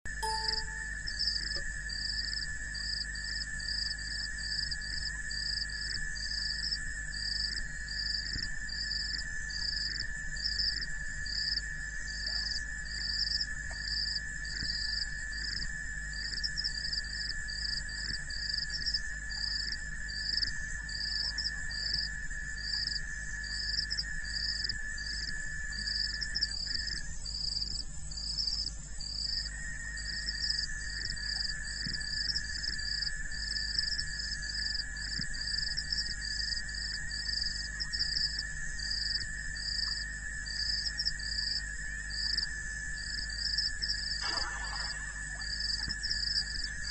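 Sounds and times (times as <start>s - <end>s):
higher chirp repeating: 0.2s - 0.9s.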